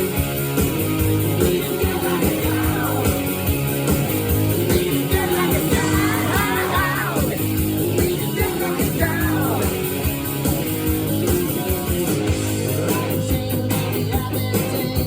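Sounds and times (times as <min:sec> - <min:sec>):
rock band playing: 0:00.0 - 0:15.0
person singing: 0:01.3 - 0:03.4, 0:04.5 - 0:09.9.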